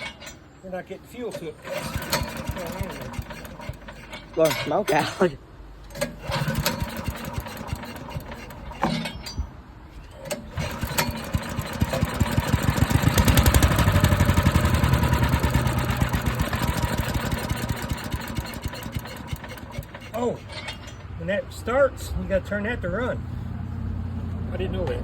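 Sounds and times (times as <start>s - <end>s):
small gasoline engine starting: 1.3s - 4.4s, 5.9s - 8.8s, 10.2s - 20.5s.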